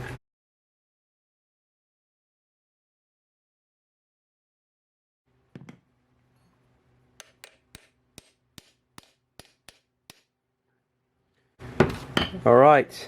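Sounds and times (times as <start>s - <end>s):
light hammer taps on steel: 7.2s - 10.3s.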